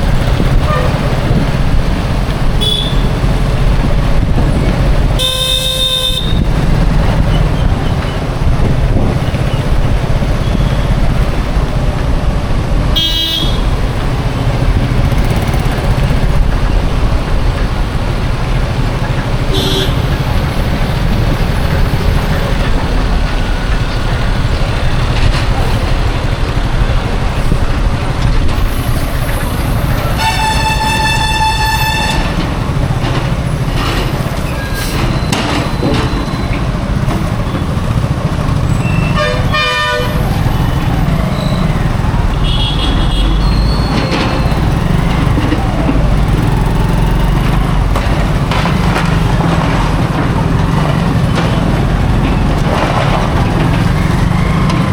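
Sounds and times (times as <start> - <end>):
highway traffic rumble: 0.0 - 54.9
vehicle horn blast: 2.6 - 3.1, 5.2 - 6.5, 13.0 - 13.7, 19.5 - 20.1, 30.1 - 32.4, 39.0 - 40.2, 42.4 - 43.4
wavering horn: 30.0 - 32.4, 38.9 - 40.4.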